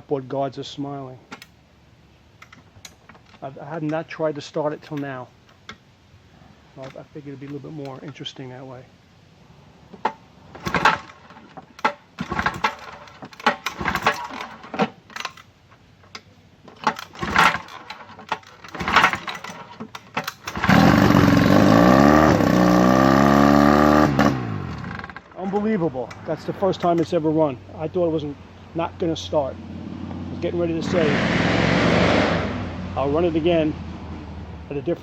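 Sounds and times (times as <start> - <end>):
recoil rope pulls: 16.8 - 27.0.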